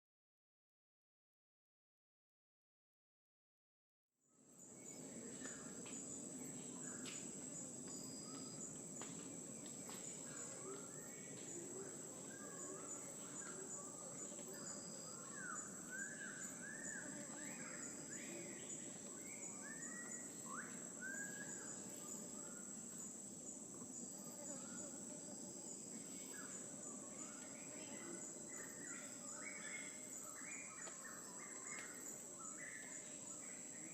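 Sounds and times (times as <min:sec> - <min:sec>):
whistled bird calls: 0:19.2 - 0:21.8.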